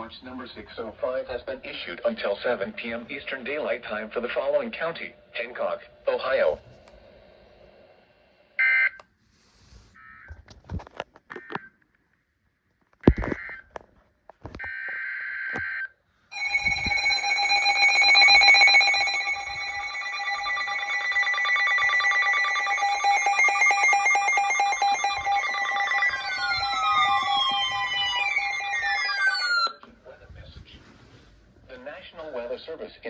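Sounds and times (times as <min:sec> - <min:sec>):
radio alarms beeping: 0:14.6 - 0:29.8
data tone bursts: 0:16.4 - 0:29.8
falling tones: 0:16.4 - 0:29.8.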